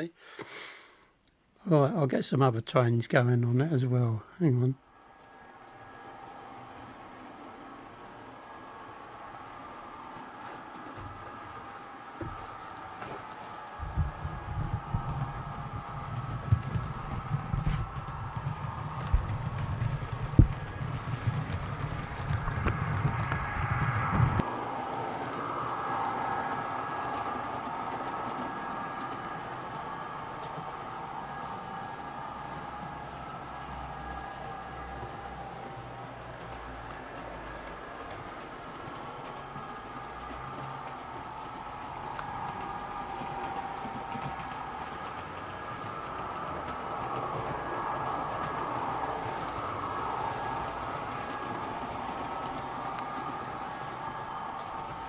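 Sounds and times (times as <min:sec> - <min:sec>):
model train rumbling on track: 0:03.2 - 0:55.0
model train motor whirr: 0:12.4 - 0:24.4.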